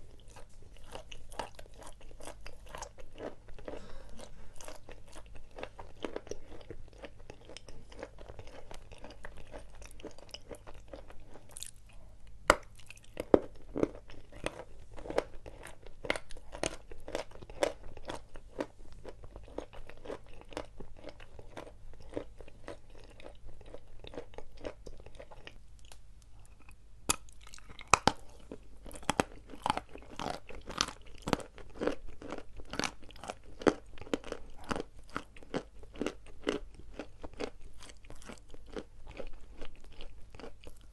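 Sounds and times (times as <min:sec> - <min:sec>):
chalk being bitten and chewed: 0:00.0 - 0:03.8.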